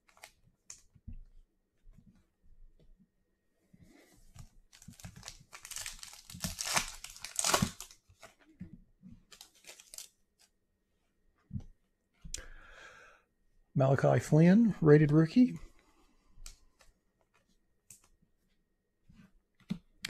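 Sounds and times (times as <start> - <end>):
wrapper crinkling and tearing: 4.7 - 8.3, 9.3 - 10.2.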